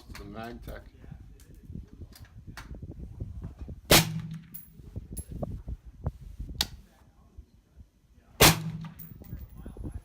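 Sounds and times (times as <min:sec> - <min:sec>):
wind rumble on microphone: 0:00.0 - 0:10.0
rifle shot: 0:03.9 - 0:04.6, 0:08.4 - 0:09.1.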